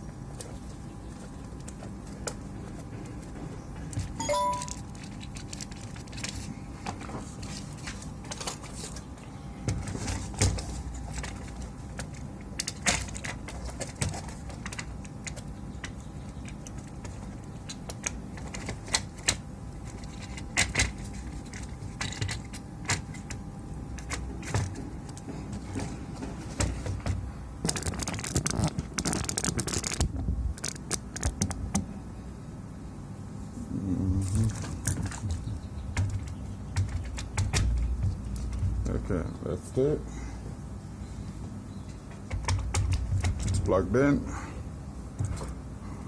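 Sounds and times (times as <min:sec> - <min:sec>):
steady low hum: 0:00.0 - 0:46.0
small hard parts clicking: 0:34.5 - 0:39.0.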